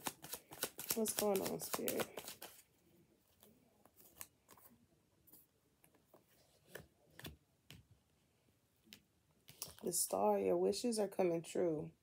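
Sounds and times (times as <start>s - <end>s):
cards clicking and snapping: 0.0s - 2.6s.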